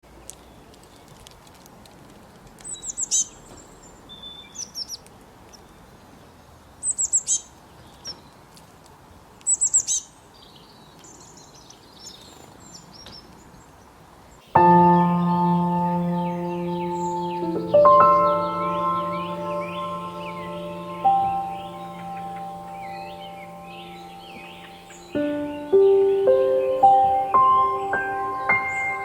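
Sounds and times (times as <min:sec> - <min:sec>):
faint steady hiss: 0:00.0 - 0:29.0
songbirds chirping: 0:00.0 - 0:29.0
soft bird twittering: 0:14.5 - 0:29.0
sustained musical chord: 0:14.6 - 0:29.0.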